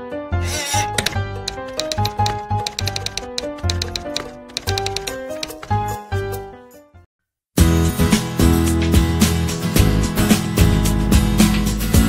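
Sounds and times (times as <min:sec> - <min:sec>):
upbeat intro music: 0:00.9 - 0:06.4.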